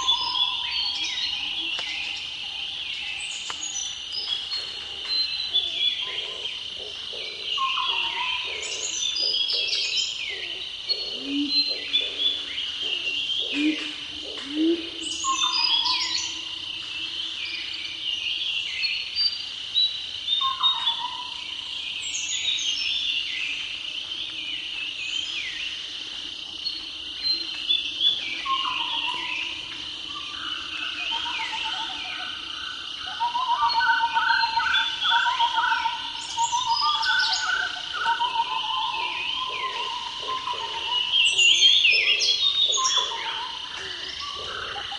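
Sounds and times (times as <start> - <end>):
low bird calls: 0.0 - 17.1, 26.7 - 44.9
birds chirping and whistling: 0.0 - 25.7, 26.7 - 44.9
high insect drone: 0.0 - 44.9.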